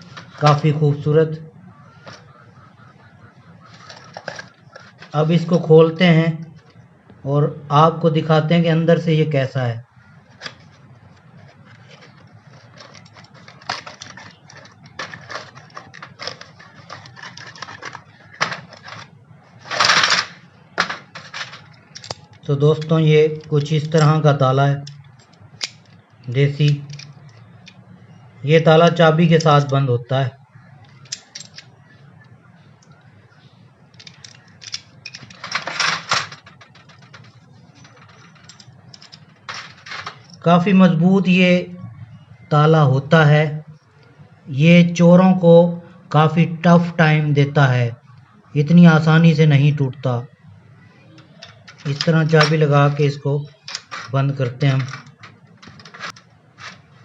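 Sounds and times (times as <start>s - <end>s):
scraping rustle: 0.0s - 0.7s, 3.6s - 5.5s, 10.2s - 23.8s, 34.0s - 40.5s, 51.2s - 57.0s.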